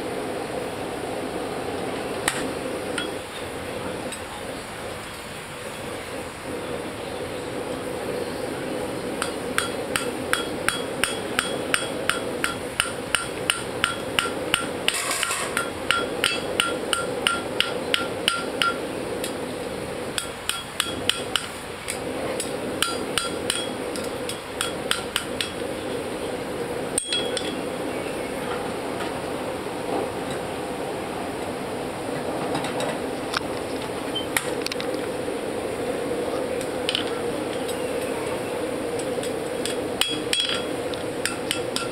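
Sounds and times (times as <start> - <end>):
hammer striking metal on anvil: 3.0 - 3.2, 9.2 - 18.8, 20.2 - 21.5, 22.4 - 25.6, 27.0 - 27.6, 39.6 - 41.9.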